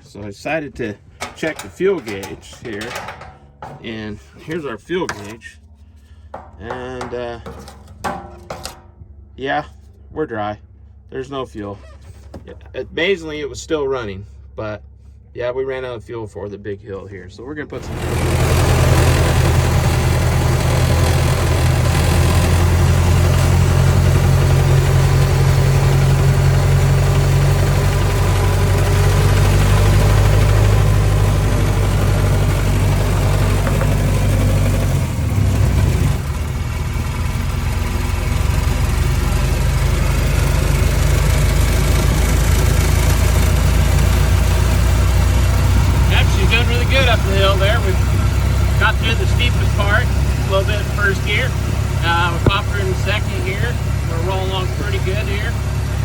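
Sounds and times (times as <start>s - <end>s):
car engine running under load: 0.0s - 10.1s, 17.6s - 56.0s.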